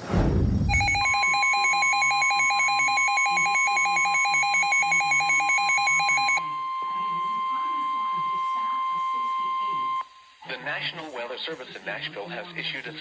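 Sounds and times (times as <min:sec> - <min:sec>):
warbling alert alarm: 0:00.7 - 0:07.4
steady single-pitch alarm tone: 0:00.7 - 0:10.1.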